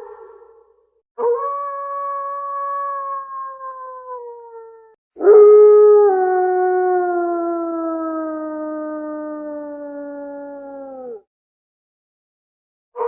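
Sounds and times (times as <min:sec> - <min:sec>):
wolf howling: 0:01.3 - 0:11.2.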